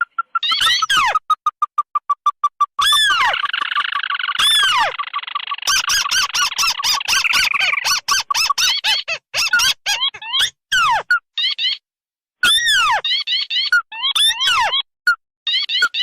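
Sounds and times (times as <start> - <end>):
fast repeated short bird notes: 0.0 - 11.2
downward-bending bird calls: 0.0 - 11.8.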